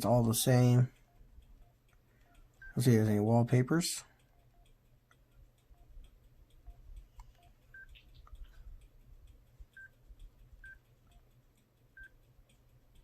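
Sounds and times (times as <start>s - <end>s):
phone keypad beeps: 0.5s - 2.9s, 6.7s - 8.0s.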